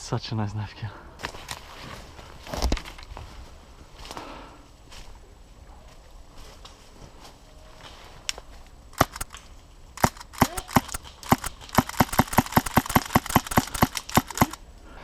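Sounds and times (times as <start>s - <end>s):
airsoft pistol shots: 9.0s - 9.4s, 10.0s - 14.6s.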